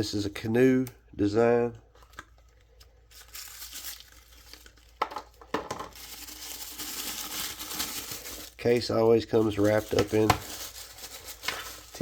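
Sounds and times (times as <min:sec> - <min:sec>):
tissue paper crinkling: 0:02.5 - 0:05.0, 0:05.9 - 0:12.0.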